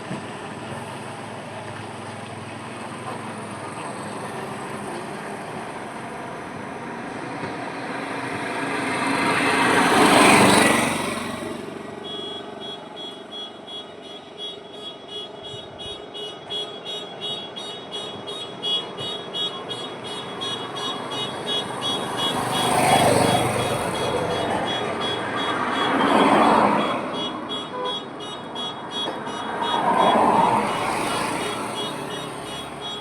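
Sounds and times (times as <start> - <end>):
vehicle passing loudly: 8.0 - 12.7, 20.6 - 27.2, 29.5 - 33.0.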